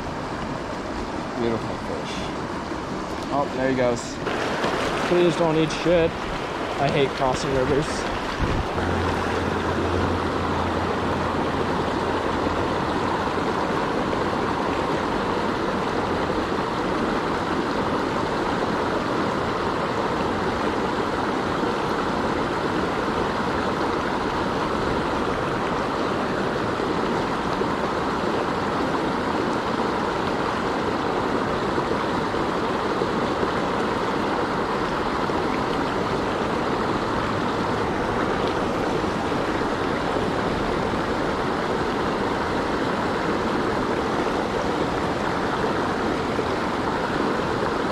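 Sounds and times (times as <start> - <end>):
creek rushing over rocks: 0.0 - 47.9.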